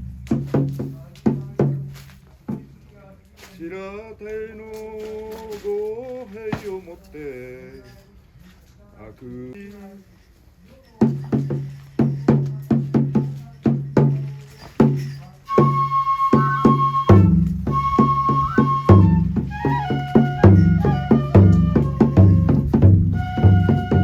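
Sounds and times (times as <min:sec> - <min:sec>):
drum beats: 0:00.0 - 0:02.9, 0:11.0 - 0:24.0
flute high notes: 0:15.4 - 0:24.0.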